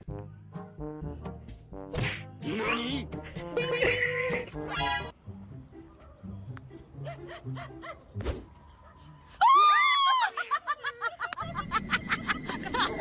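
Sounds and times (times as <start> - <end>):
snickering laughter: 7.0 - 8.1, 10.2 - 13.0.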